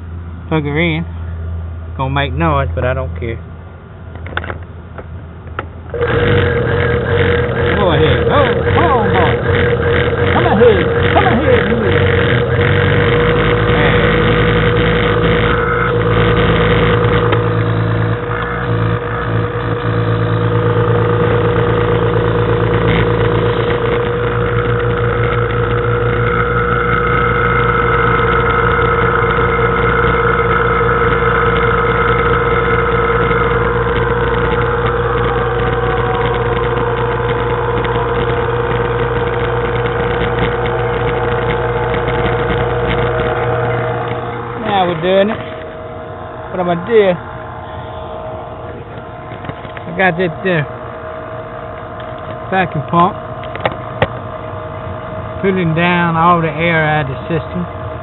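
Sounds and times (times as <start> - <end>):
vacuum pump running: 4.1 - 58.0.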